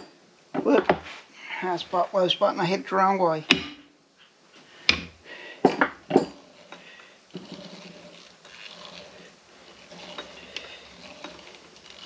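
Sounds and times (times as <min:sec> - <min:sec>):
hammer tapping metal: 0:03.5 - 0:03.9.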